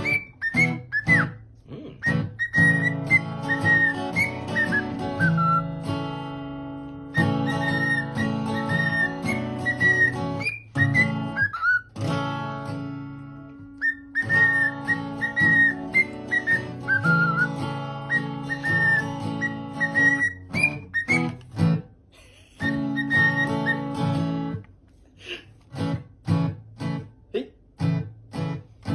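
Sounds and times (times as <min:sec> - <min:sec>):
whistled melody: 0:00.0 - 0:06.1, 0:07.0 - 0:12.3, 0:13.6 - 0:21.6, 0:22.6 - 0:24.3
acoustic guitar chords: 0:00.0 - 0:22.1, 0:25.7 - 0:28.9.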